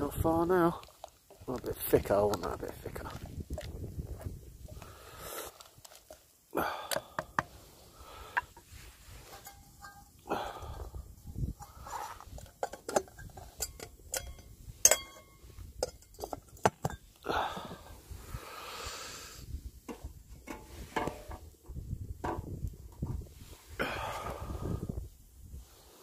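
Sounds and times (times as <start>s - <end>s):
breathy sound: 6.5s - 8.8s, 10.2s - 12.2s, 17.2s - 19.4s, 23.8s - 24.9s.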